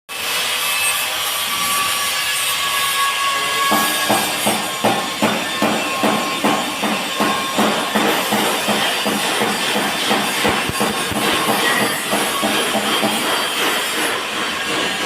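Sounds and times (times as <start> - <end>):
drum beat: 4.2 - 14.8.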